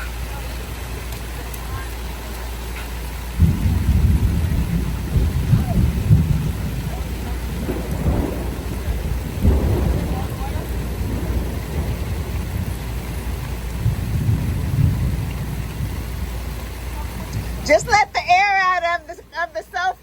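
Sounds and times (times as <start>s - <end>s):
steady rain: 0.0s - 20.0s
low rumble of thunder: 3.1s - 18.9s.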